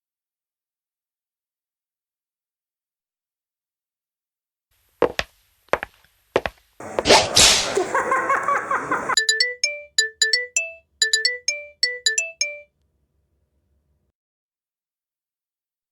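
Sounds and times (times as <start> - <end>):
electronic ringtone jingle: 9.1 - 12.7.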